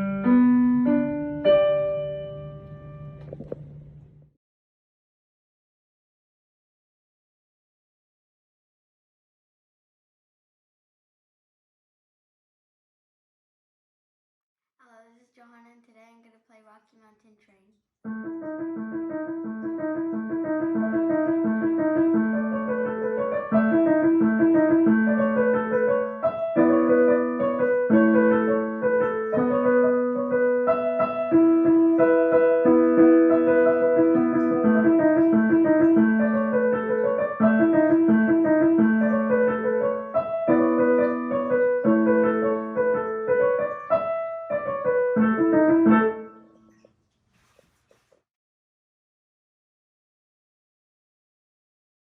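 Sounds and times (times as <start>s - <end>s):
beginner piano piece: 0.0s - 4.3s, 18.0s - 46.8s.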